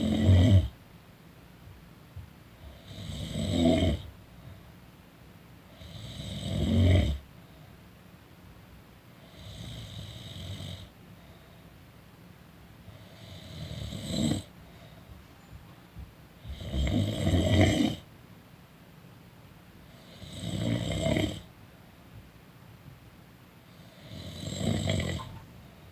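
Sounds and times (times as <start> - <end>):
person snoring: 0.0 - 0.7, 5.8 - 7.2, 16.5 - 18.0, 20.0 - 21.5, 23.8 - 25.4.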